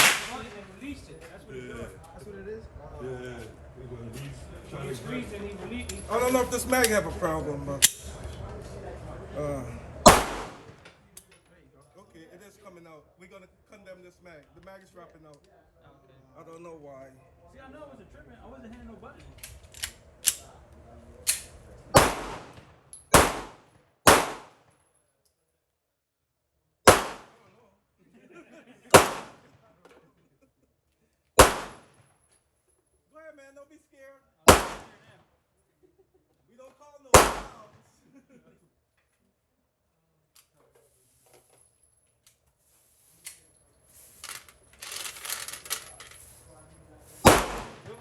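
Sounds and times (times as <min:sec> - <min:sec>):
pistol shots: 0:00.0 - 0:00.6, 0:10.0 - 0:10.8, 0:22.0 - 0:24.6, 0:26.9 - 0:27.4, 0:28.9 - 0:29.5, 0:31.4 - 0:31.9, 0:34.5 - 0:35.0, 0:37.2 - 0:37.7, 0:47.2 - 0:48.0.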